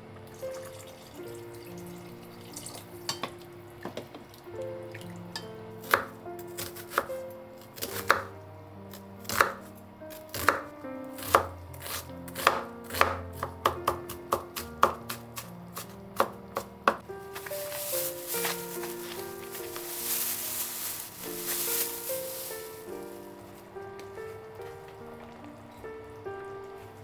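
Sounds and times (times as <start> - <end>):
knife chopping on cutting board: 11.2 - 15.2.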